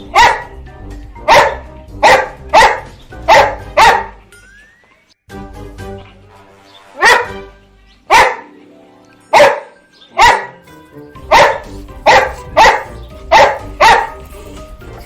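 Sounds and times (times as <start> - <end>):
dog barking: 0.0 - 0.5, 1.2 - 4.2, 7.0 - 7.4, 8.1 - 8.5, 9.3 - 10.6, 11.2 - 15.0.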